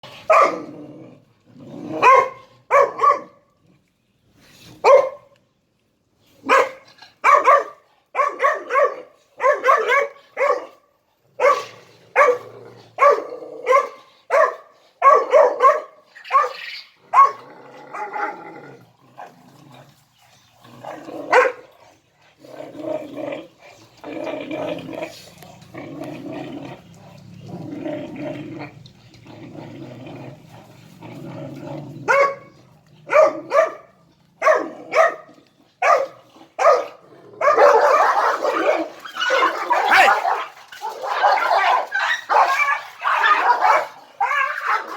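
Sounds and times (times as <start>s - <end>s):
puppy barking: 0.3s - 0.6s, 2.0s - 3.4s, 4.8s - 5.3s, 6.5s - 10.8s, 11.4s - 17.4s, 21.3s - 21.6s, 32.1s - 32.5s, 33.1s - 40.4s, 41.2s - 44.9s
puppy growling: 16.6s - 21.4s, 22.3s - 35.0s, 36.4s - 44.9s.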